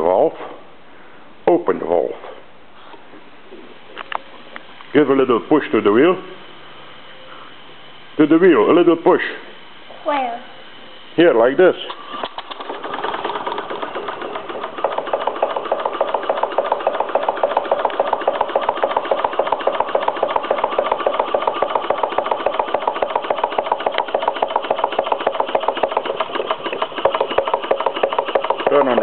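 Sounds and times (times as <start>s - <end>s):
model steam engine running: 11.9s - 29.0s.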